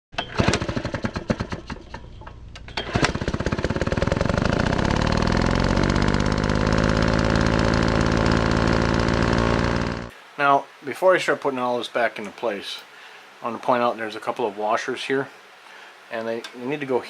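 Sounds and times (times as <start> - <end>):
irregular engine knocks: 0.2 - 10.1
small engine running: 0.2 - 10.1.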